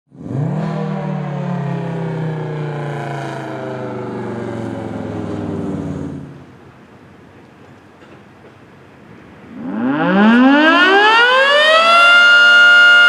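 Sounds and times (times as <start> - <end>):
three-tone warning siren: 0.6 - 6.5, 9.5 - 13.0.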